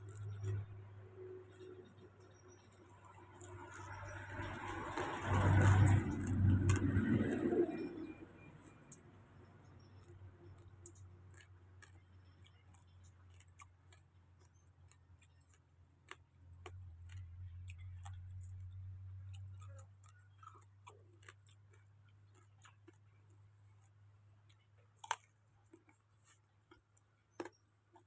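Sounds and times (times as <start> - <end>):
faint small clicks and ticks: 0.0 - 0.7, 1.5 - 28.0.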